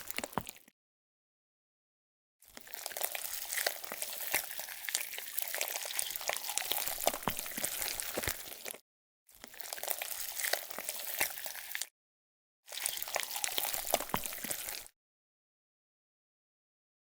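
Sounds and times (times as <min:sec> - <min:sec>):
food preparation crackling: 0:00.0 - 0:00.6, 0:02.5 - 0:08.8, 0:09.5 - 0:11.9, 0:12.7 - 0:14.9.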